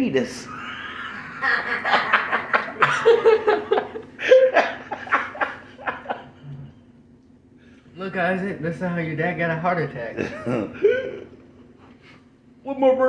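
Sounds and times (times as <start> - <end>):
people laughing: 0.4 - 6.8, 10.1 - 11.4.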